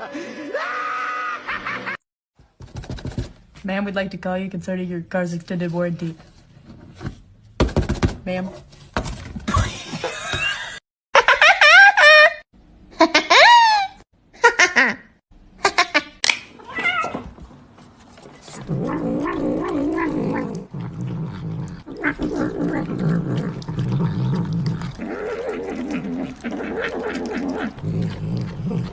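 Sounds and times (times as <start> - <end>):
cat meowing and yowling: 16.6 - 17.2.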